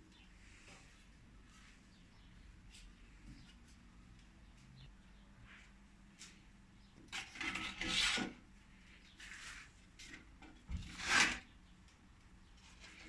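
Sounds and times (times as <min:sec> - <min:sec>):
rough rasping scraping: 0:10.8 - 0:11.5.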